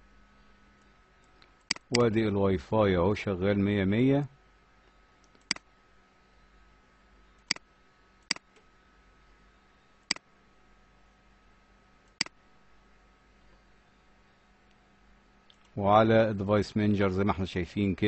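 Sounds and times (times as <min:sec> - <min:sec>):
computer mouse clicking: 0:01.2 - 0:02.0, 0:12.1 - 0:12.4.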